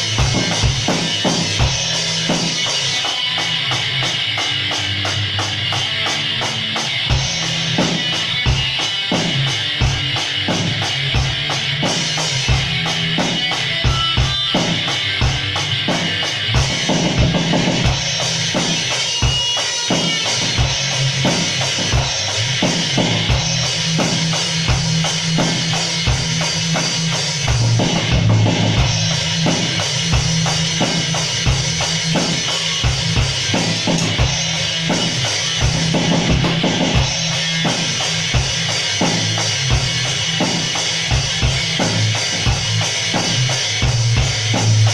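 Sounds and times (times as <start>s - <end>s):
drum kit beat: 0.0s - 44.9s
sustained low bass line: 22.4s - 32.2s.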